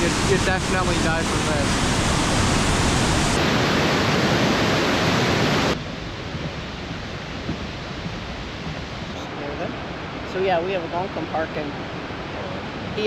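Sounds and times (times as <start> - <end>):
waterfall rushing: 0.0 - 5.8.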